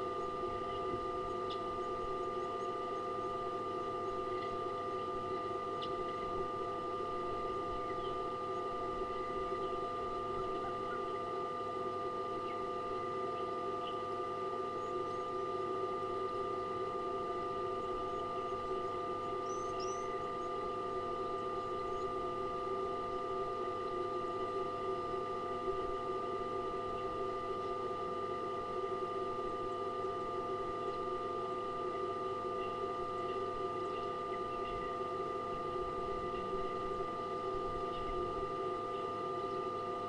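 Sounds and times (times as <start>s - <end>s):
steady hum of held tones: 0.0s - 40.0s
faint high chirps: 19.4s - 20.6s.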